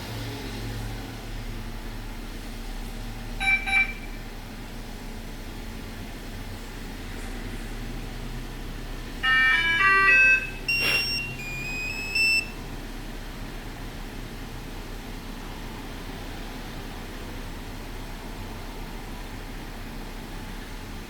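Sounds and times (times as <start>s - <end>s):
electronic car alarm chime beeps: 3.4s - 4.2s, 9.2s - 12.6s
short hiss: 10.7s - 11.4s.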